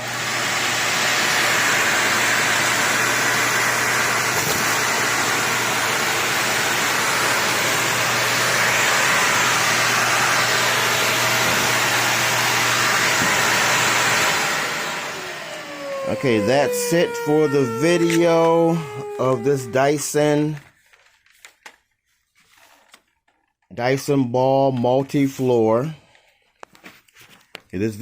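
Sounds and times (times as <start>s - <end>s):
vacuum cleaner running: 0.0s - 20.7s.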